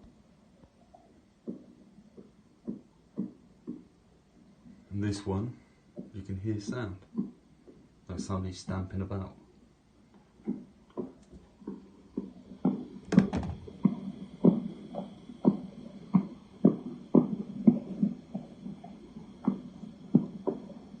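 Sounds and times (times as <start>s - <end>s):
dull banging thumps: 12.6s - 14.6s.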